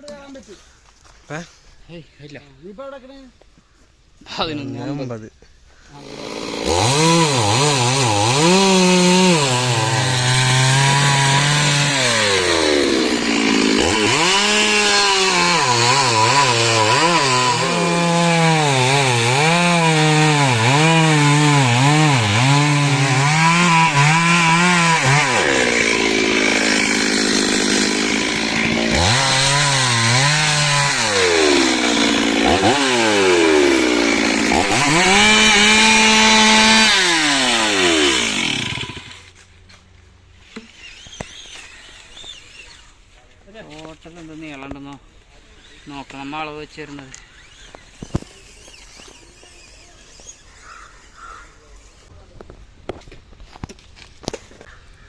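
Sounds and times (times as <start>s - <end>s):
chainsaw cutting wood: 6.0s - 39.4s, 40.5s - 42.9s, 45.5s - 50.9s.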